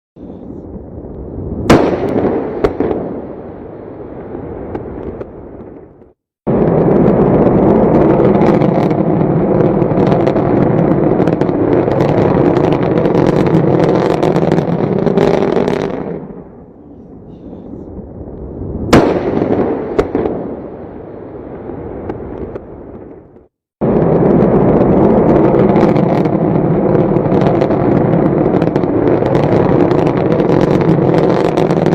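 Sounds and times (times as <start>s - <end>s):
dense crackling blasts: 0.2s - 31.9s
sharp cracks: 1.1s - 3.4s.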